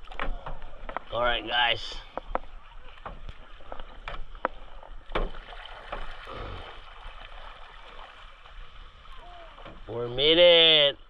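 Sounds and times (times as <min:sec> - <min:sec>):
light water noise: 0:00.0 - 0:11.0
paddle knocking against hull: 0:02.0 - 0:06.9, 0:09.2 - 0:10.2.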